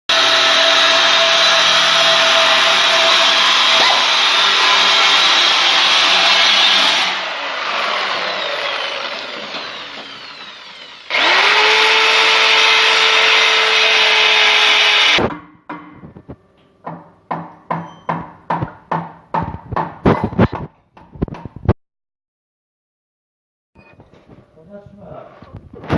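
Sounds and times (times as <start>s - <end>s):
power tool whining: 0.1s - 15.3s.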